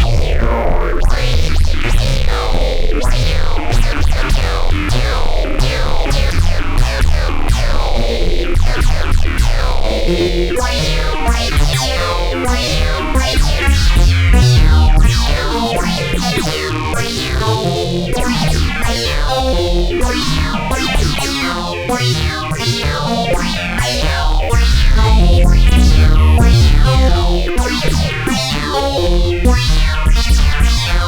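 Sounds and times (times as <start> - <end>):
heavy bass line: 12.6 - 15.2, 24.6 - 28.1
synthesizer music: 24.8 - 27.8
falling filter sweeps: 24.9 - 27.7.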